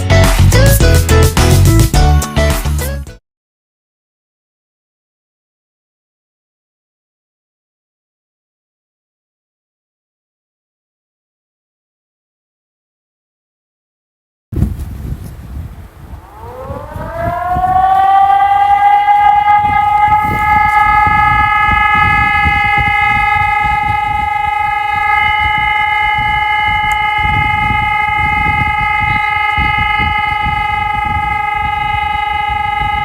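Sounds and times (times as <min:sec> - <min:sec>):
low rumbling noise: 0:14.8 - 0:33.0
electronic siren: 0:15.4 - 0:33.0.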